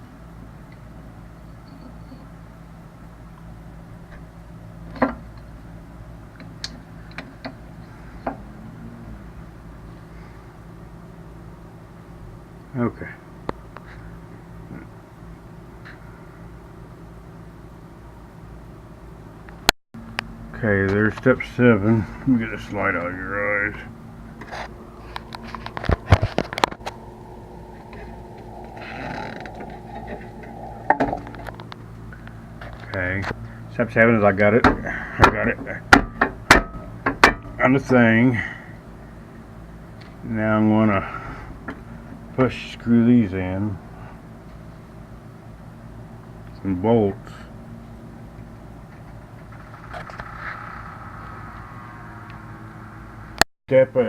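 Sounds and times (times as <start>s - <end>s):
steady low hum: 0.0s - 54.0s
scraping rustle: 48.9s - 52.0s.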